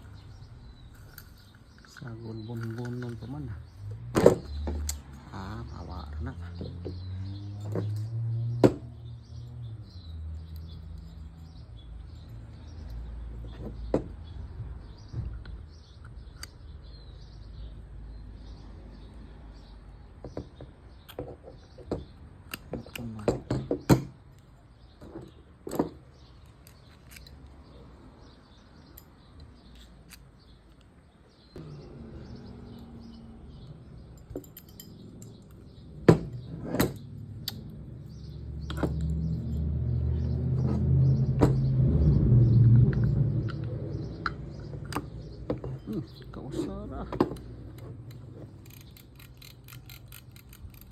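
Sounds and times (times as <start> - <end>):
faint birds chirping: 0.0 - 50.9
fishing reel parts clicking: 47.4 - 50.9.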